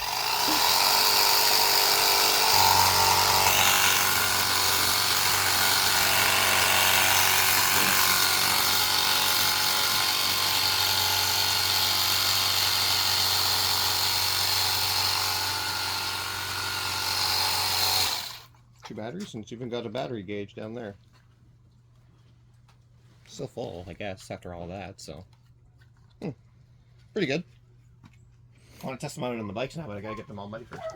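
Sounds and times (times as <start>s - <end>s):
pressure washer motor hum: 0.0s - 18.5s.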